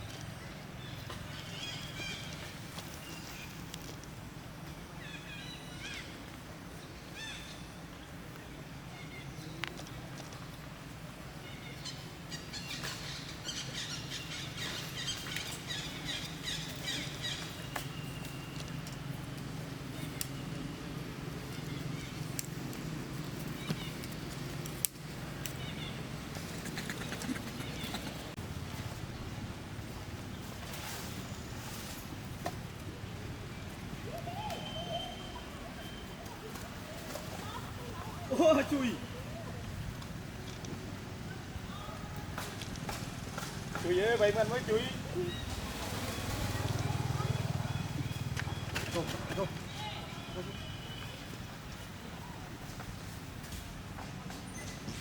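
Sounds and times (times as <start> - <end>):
steady low background noise: 0.0 - 55.0.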